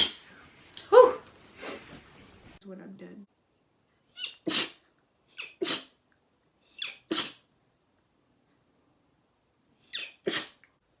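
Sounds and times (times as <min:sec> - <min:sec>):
woman sneezing: 0:04.4 - 0:04.8, 0:05.4 - 0:06.0, 0:07.1 - 0:07.4, 0:10.0 - 0:10.6.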